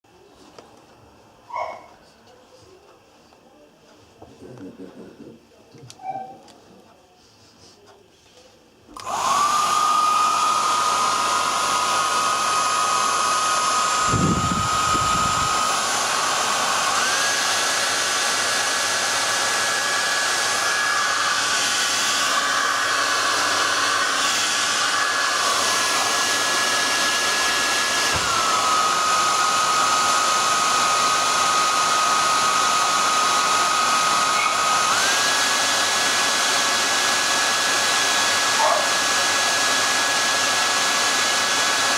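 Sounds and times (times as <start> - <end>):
hair dryer running: 8.9 - 41.9.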